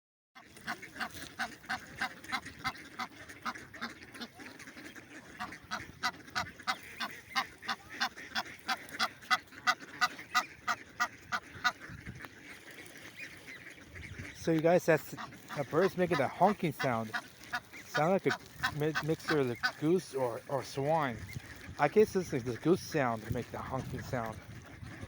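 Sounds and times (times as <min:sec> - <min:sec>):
goose honking: 0:00.4 - 0:25.0.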